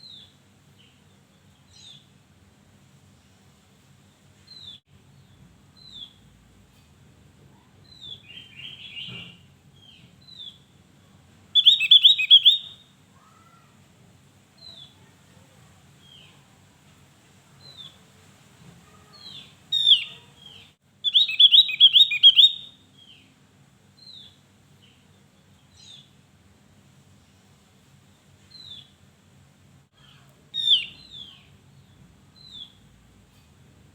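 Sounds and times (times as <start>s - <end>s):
bird chattering song: 7.9s - 10.6s, 11.6s - 12.8s, 19.1s - 23.3s, 30.1s - 32.8s
high bird chip notes: 11.6s - 12.8s, 21.1s - 22.7s.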